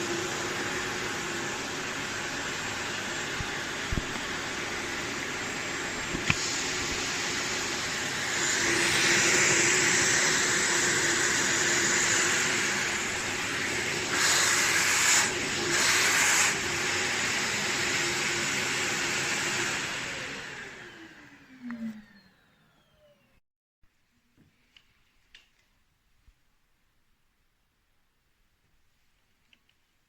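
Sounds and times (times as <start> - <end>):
vacuum cleaner running: 0.0 - 23.4.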